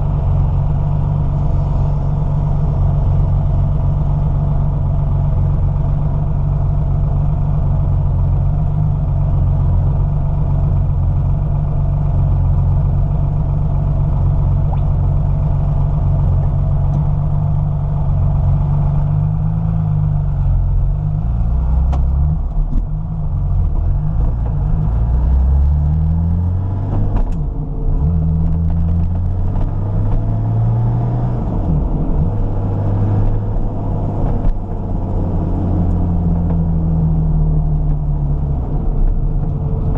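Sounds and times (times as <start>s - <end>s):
car engine revving: 14.8s - 39.9s.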